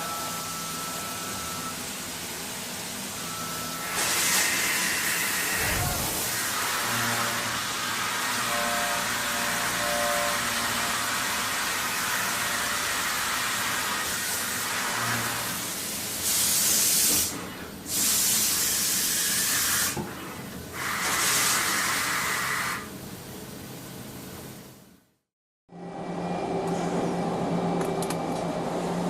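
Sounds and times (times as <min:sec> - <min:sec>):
cnc machine hissing and humming: 0:03.0 - 0:15.8.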